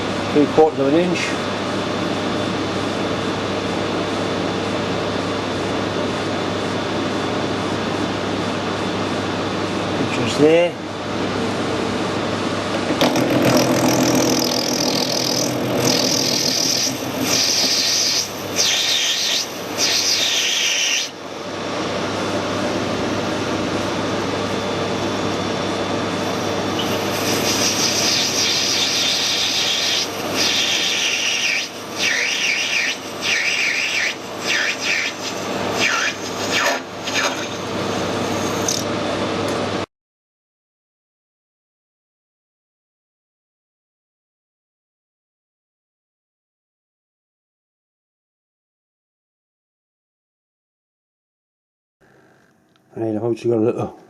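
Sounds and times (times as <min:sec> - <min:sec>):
steady machine hum: 0:00.0 - 0:39.9
metal cutting scraping: 0:12.8 - 0:21.1, 0:26.6 - 0:37.7.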